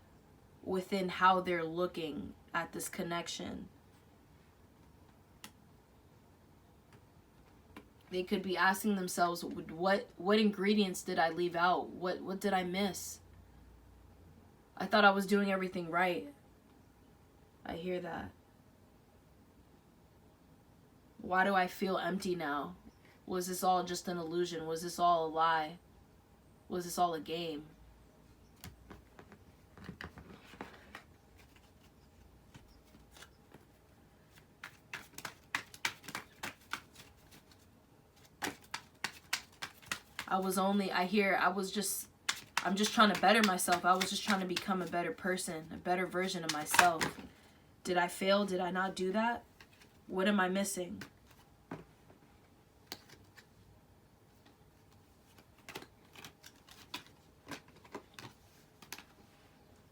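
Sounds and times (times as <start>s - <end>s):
cards being shuffled: 28.6s - 40.6s, 42.2s - 45.4s, 46.0s - 47.4s, 49.5s - 50.0s, 51.0s - 51.5s, 52.9s - 53.6s, 54.4s - 59.2s.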